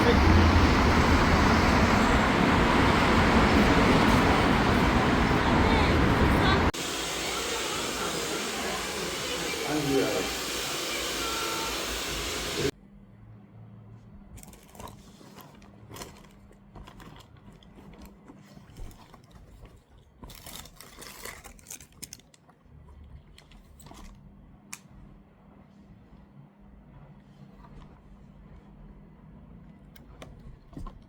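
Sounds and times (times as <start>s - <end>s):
loud steady rushing noise: 0.0s - 12.7s.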